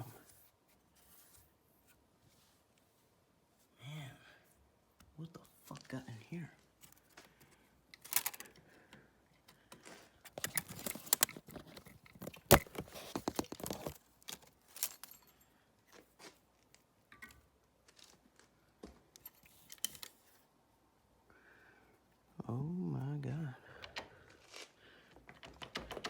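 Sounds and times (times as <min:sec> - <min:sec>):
metal clinks and scrapes of tools: 0:08.0 - 0:08.6, 0:10.3 - 0:16.0, 0:19.2 - 0:20.4.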